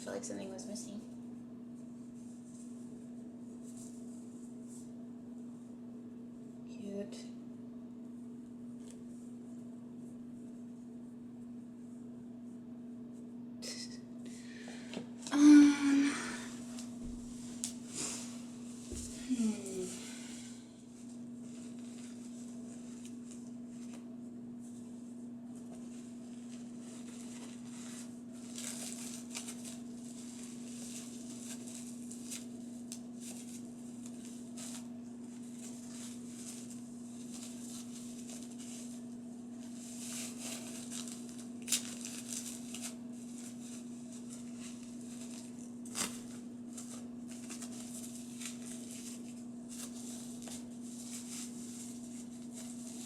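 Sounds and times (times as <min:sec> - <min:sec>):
hands rustling with doll: 0:16.6 - 0:53.0.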